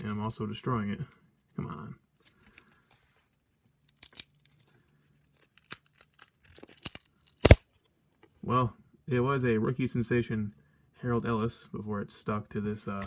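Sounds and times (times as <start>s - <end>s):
cards peeling and tearing apart: 3.8s - 4.7s, 5.3s - 7.7s.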